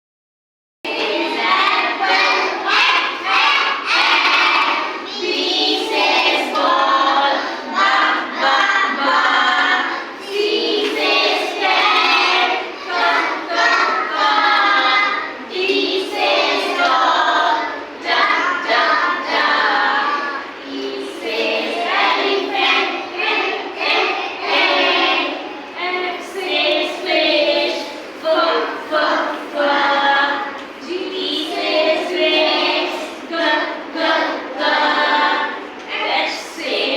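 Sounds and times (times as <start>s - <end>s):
children singing in unison: 0.9s - 36.9s.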